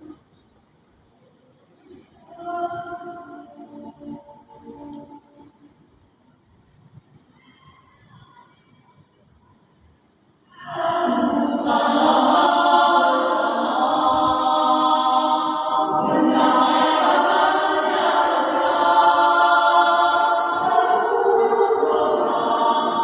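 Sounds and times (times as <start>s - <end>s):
choir singing: 2.3s - 5.1s, 10.5s - 23.0s.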